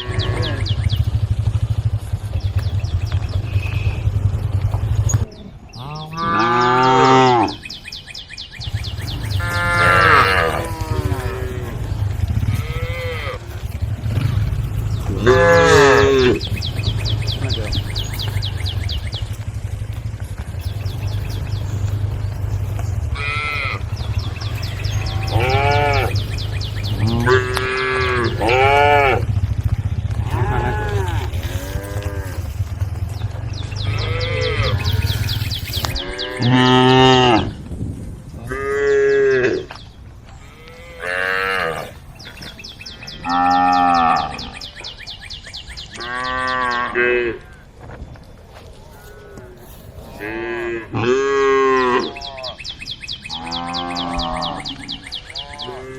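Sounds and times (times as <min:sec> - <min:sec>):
cows mooing: 0:00.0 - 0:01.9, 0:02.6 - 0:07.7, 0:08.9 - 0:37.6, 0:38.4 - 0:44.8, 0:45.8 - 0:47.6, 0:48.9 - 0:52.7, 0:53.3 - 0:55.9
steady low hum: 0:07.6 - 0:36.5.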